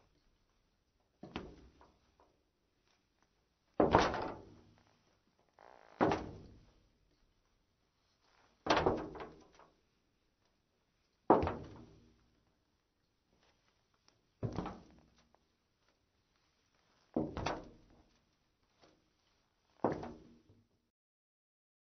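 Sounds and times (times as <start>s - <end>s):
heeled shoes on metal floor: 14.4s - 15.3s, 17.1s - 18.2s, 19.8s - 20.4s.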